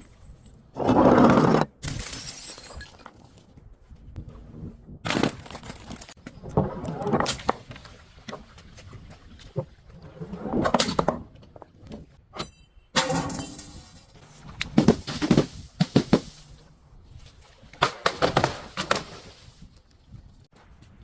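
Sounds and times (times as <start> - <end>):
rushing crunching debris: 13.1 - 16.6.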